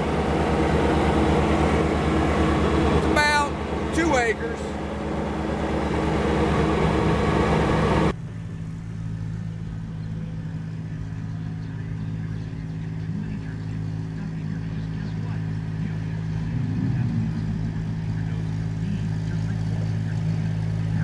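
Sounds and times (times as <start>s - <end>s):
tractor diesel engine running: 0.0s - 8.2s.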